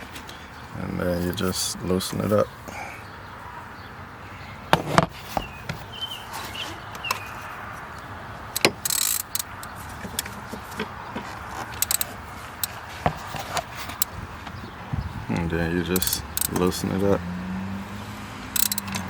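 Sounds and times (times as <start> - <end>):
ratchet clicking: 8.6 - 9.7, 11.8 - 12.7, 16.0 - 16.6, 18.6 - 19.0.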